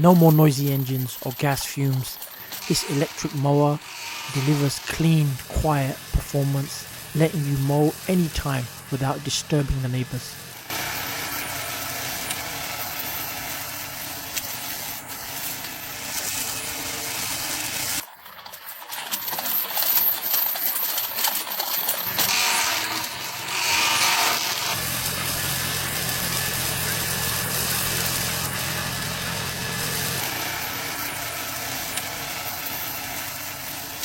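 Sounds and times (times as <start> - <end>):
robot lawn mower clattering: 18.9 - 34.0.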